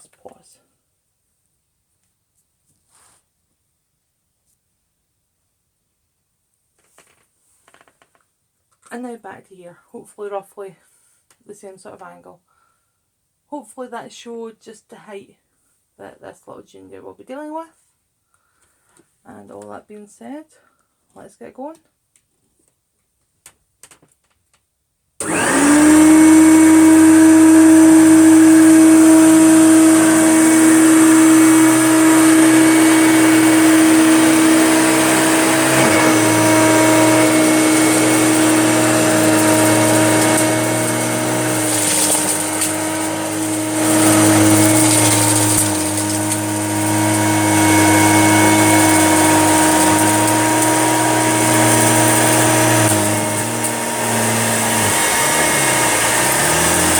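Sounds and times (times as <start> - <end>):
upright vacuum cleaner whining: 25.2 - 56.9.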